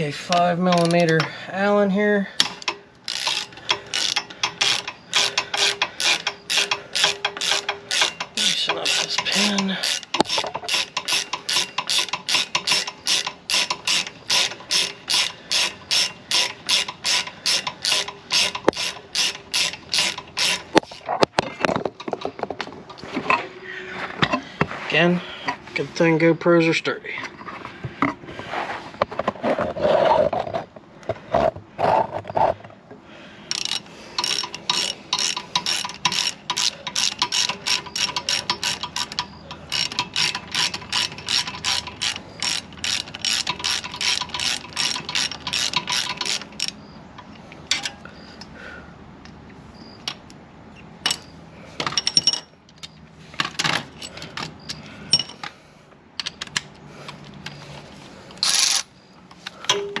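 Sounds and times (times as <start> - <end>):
hand ratchet clicking: 0.2 - 1.7, 2.4 - 21.1, 33.5 - 48.5, 58.3 - 59.8.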